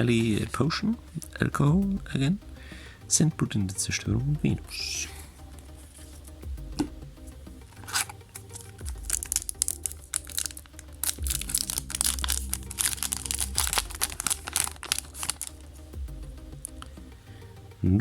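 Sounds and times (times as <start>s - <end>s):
soft background music: 0.0s - 18.0s
foil wrapper crinkling: 7.8s - 15.8s.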